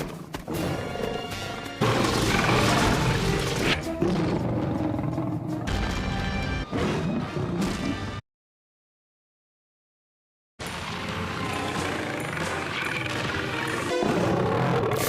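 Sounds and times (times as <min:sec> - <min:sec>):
bear growling roar: 0:01.8 - 0:06.0, 0:10.7 - 0:15.0.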